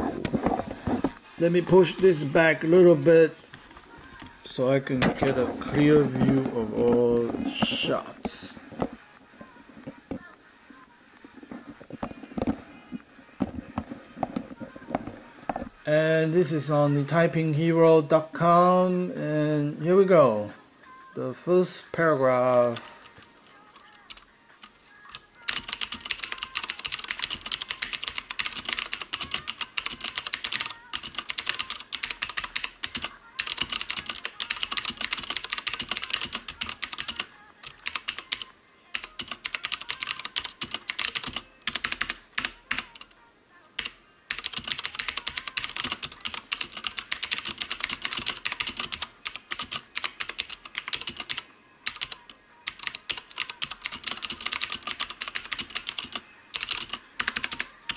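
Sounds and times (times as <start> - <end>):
clicky keyboard typing: 25.1 - 43.1, 43.8 - 57.9.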